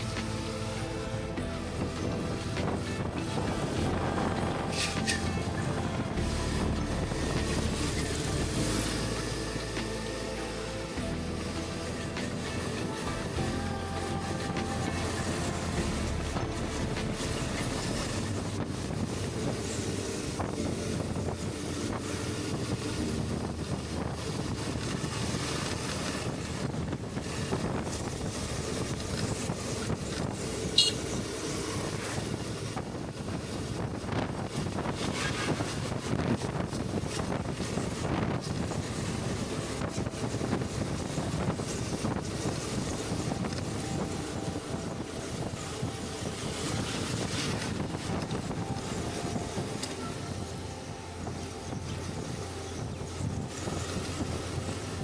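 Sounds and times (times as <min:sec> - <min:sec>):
muffled motorcycle engine: 0:00.0 - 0:55.0
wind rushing on microphone: 0:00.0 - 0:55.0.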